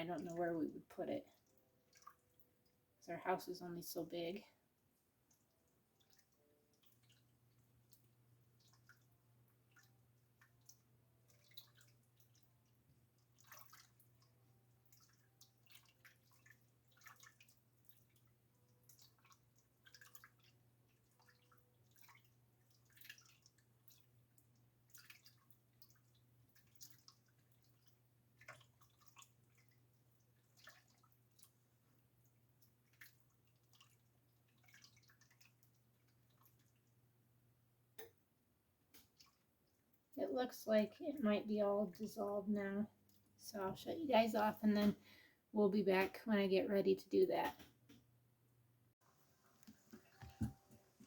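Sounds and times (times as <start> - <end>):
faint ticks and pops of heating pot: 37.9 - 38.2.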